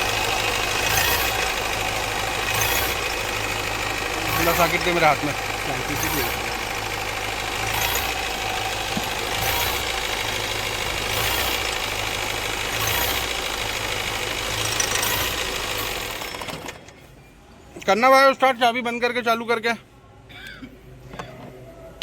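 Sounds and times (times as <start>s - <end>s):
diesel engine idling with knock: 0.0s - 17.0s.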